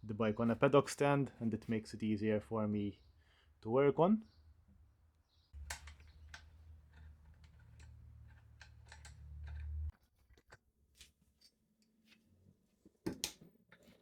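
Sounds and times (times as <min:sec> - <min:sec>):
clicks of tools being handled: 0:05.6 - 0:09.9.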